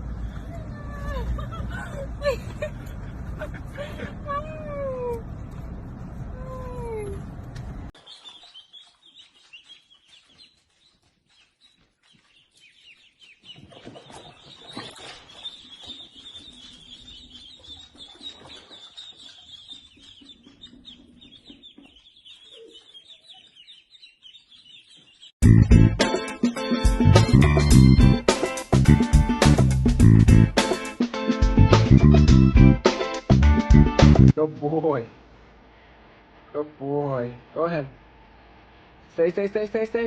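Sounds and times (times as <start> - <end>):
small birds chirping: 0.0 - 1.5, 8.0 - 25.4
faint low rumble: 0.0 - 7.9.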